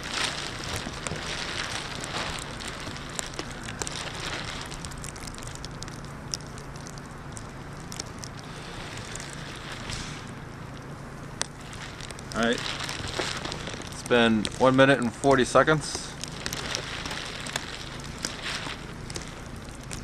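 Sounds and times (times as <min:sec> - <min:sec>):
plastic bag crackling: 0:00.0 - 0:20.0
steady hiss: 0:00.0 - 0:20.0.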